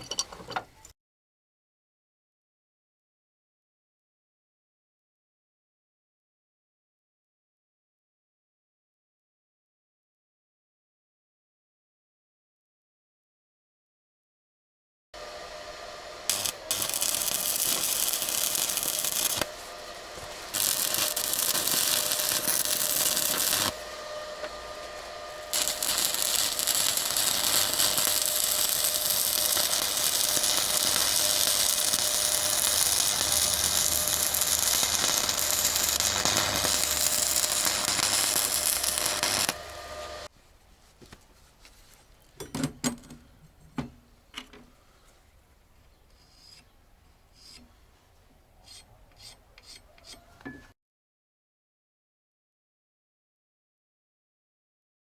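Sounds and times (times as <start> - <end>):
power tool running: 15.2 - 40.3.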